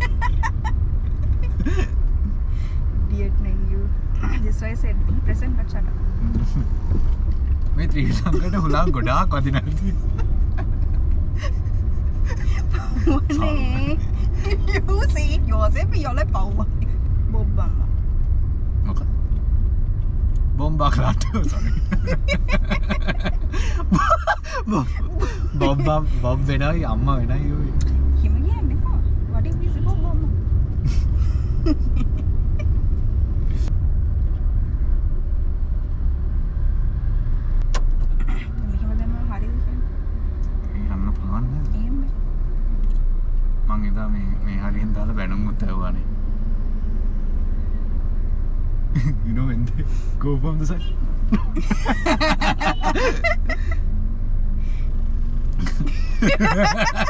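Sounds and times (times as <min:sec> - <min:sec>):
people talking: 0:00.0 - 0:00.7, 0:01.6 - 0:01.9, 0:03.1 - 0:06.7, 0:07.8 - 0:10.0, 0:12.3 - 0:17.9, 0:18.8 - 0:19.0, 0:20.6 - 0:30.3, 0:38.2 - 0:39.8, 0:40.8 - 0:42.1, 0:49.0 - 0:53.6, 0:55.6 - 0:57.0
car engine and road noise: 0:00.0 - 0:57.0.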